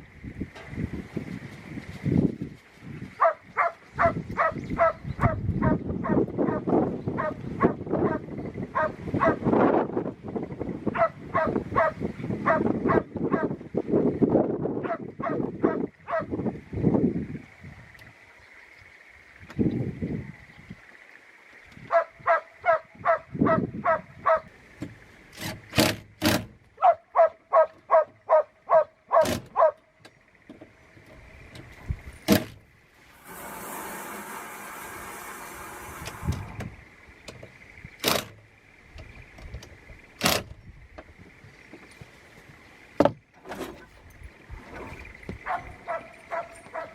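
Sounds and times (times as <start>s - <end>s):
steady hissing noise: 32.8s - 40.0s.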